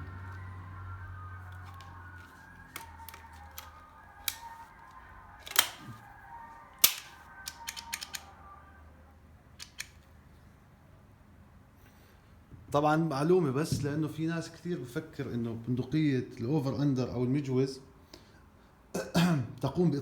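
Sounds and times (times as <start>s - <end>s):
shotgun metallic clicks: 2.6s - 4.6s, 5.4s - 6.0s, 6.8s - 8.3s, 9.6s - 10.1s.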